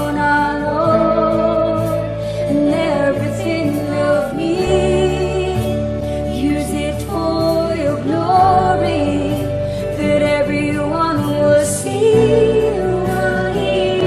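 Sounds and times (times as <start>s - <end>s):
band playing worship song: 0.0s - 14.0s.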